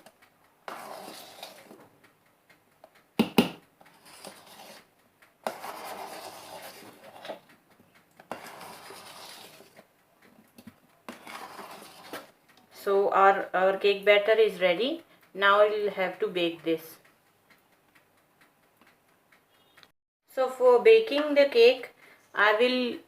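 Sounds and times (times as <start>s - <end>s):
utensil scraping through batter: 0.6s - 1.8s, 3.8s - 7.5s, 8.2s - 9.9s, 10.6s - 12.4s.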